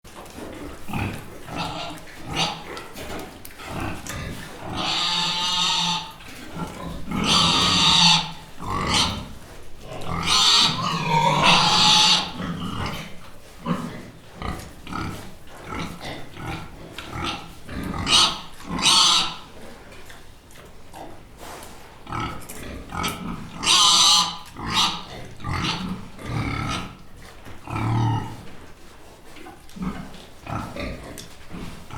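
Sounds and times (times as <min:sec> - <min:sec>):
pig grunting: 0:00.4 - 0:19.5, 0:22.1 - 0:27.0, 0:27.6 - 0:28.5, 0:29.5 - 0:31.9
pig squealing: 0:01.5 - 0:02.6, 0:04.6 - 0:09.3, 0:10.0 - 0:12.6, 0:17.2 - 0:19.4, 0:23.0 - 0:26.9.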